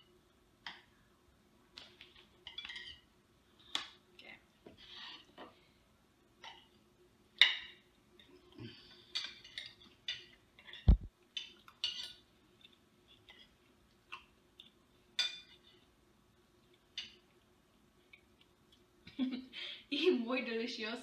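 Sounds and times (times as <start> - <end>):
cutlery clinking on plates: 1.8 - 3.0, 7.4 - 8.3, 9.0 - 12.3, 15.2 - 15.8, 16.9 - 17.2.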